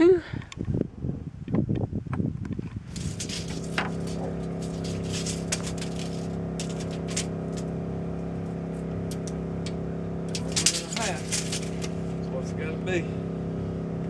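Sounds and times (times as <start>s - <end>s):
motor running: 2.9s - 14.0s.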